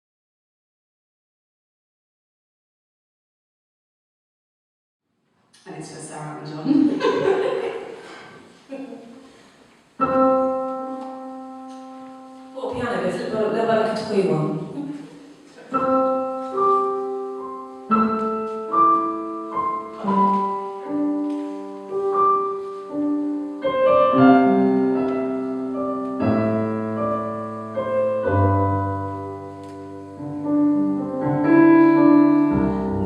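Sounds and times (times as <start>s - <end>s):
solo piano playing: 10.0s - 13.6s, 15.7s - 33.0s.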